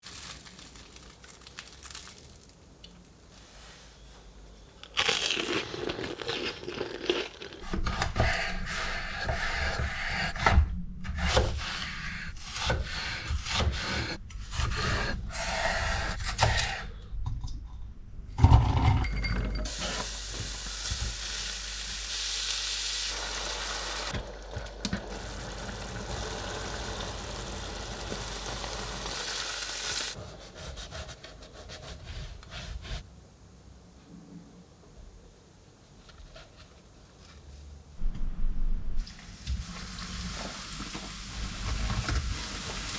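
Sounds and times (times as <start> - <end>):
food sizzling in oil: 19.6 - 30.2.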